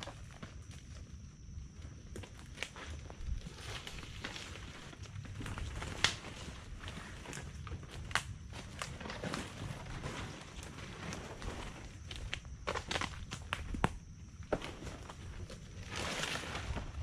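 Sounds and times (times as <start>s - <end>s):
footsteps crunching over ground: 0.0s - 17.0s
sharp cracks and snaps: 5.8s - 6.2s, 7.9s - 8.9s.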